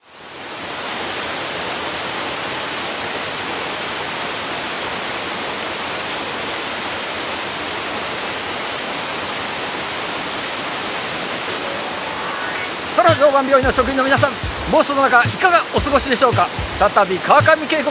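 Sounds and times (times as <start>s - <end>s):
waterfall rushing: 10.6s - 17.9s.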